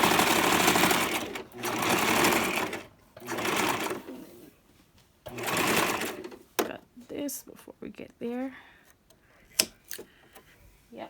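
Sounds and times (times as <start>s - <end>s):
electric sewing machine stitching: 0.0s - 4.4s, 5.3s - 6.4s.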